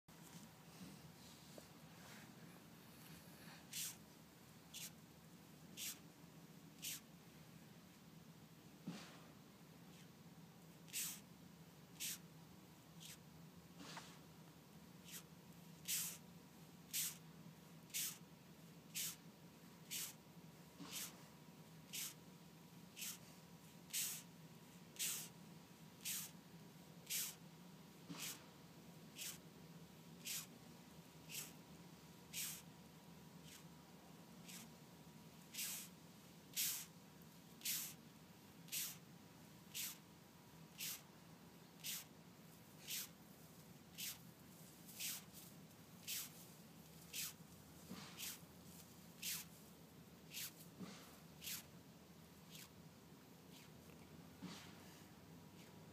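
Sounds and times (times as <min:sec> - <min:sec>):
beetle hissing bursts: 0:03.7 - 0:04.0, 0:04.7 - 0:05.0, 0:05.8 - 0:06.0, 0:06.8 - 0:07.0, 0:10.9 - 0:11.3, 0:12.0 - 0:12.2, 0:13.0 - 0:13.2, 0:15.0 - 0:16.2, 0:16.9 - 0:17.2, 0:17.9 - 0:18.2, 0:18.9 - 0:19.2, 0:19.9 - 0:20.2, 0:20.9 - 0:21.2, 0:21.9 - 0:22.2, 0:23.0 - 0:23.2, 0:23.9 - 0:24.3, 0:25.0 - 0:25.4, 0:26.0 - 0:26.4, 0:27.0 - 0:27.4, 0:28.1 - 0:28.4, 0:29.2 - 0:29.4, 0:30.2 - 0:30.5, 0:31.3 - 0:31.6, 0:32.3 - 0:32.7, 0:33.4 - 0:33.6, 0:34.4 - 0:34.7, 0:35.5 - 0:37.0, 0:37.6 - 0:38.0, 0:38.7 - 0:39.0, 0:39.7 - 0:40.0, 0:40.8 - 0:41.1, 0:41.8 - 0:42.1, 0:42.8 - 0:43.2, 0:43.9 - 0:44.2, 0:45.0 - 0:45.3, 0:46.0 - 0:46.3, 0:47.1 - 0:47.4, 0:48.0 - 0:48.4, 0:49.2 - 0:49.5, 0:50.3 - 0:50.6, 0:51.4 - 0:51.7.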